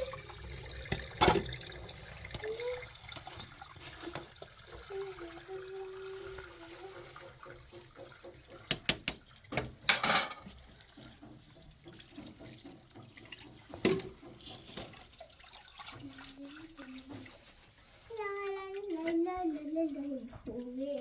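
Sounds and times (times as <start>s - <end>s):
water splashing and trickling: 0.0s - 21.0s.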